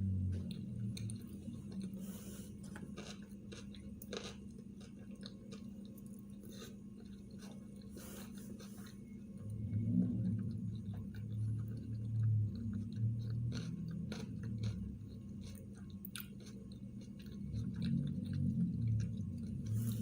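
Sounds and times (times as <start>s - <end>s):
steady low hum: 0.0s - 20.0s
person chewing: 0.2s - 20.0s
loud low rumble: 9.4s - 15.1s.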